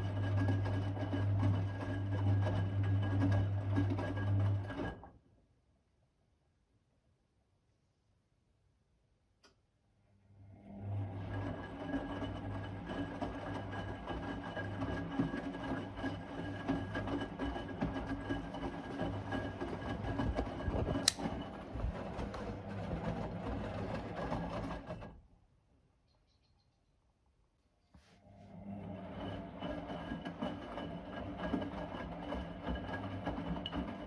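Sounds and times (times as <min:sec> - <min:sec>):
sharp click: 0:21.0 - 0:21.3.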